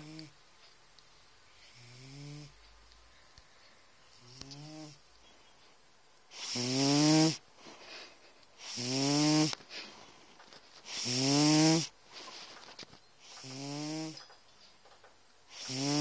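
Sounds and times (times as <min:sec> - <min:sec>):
cat snoring: 0:00.0 - 0:00.3, 0:01.6 - 0:02.6, 0:04.2 - 0:05.0, 0:06.3 - 0:07.4, 0:08.6 - 0:09.6, 0:10.9 - 0:11.9, 0:13.2 - 0:14.2, 0:15.5 - 0:16.0
soft breathing: 0:01.1 - 0:05.8, 0:07.5 - 0:08.7, 0:09.6 - 0:10.9, 0:12.0 - 0:13.5.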